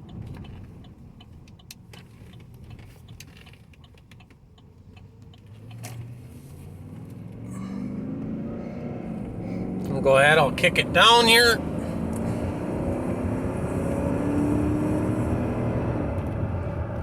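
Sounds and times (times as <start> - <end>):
light clicks and ticks: 0.0 - 6.1
low road hum: 0.0 - 17.0
car engine accelerating: 4.8 - 17.0.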